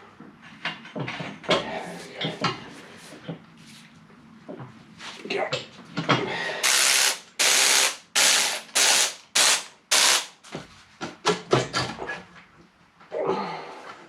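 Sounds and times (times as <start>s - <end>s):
impact wrench hammering: 6.6s - 10.4s.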